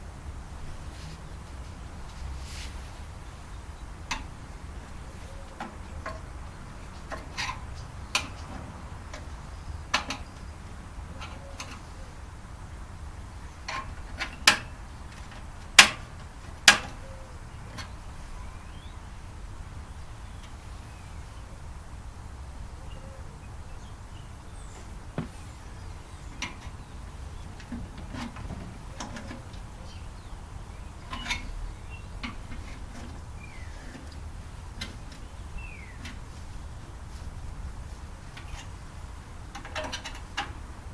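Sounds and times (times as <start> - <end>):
hand tools clicking and tapping: 4.1 - 10.5, 11.1 - 12.0, 13.6 - 17.1, 26.3 - 29.8, 32.2 - 33.2, 33.8 - 36.3, 39.5 - 40.7.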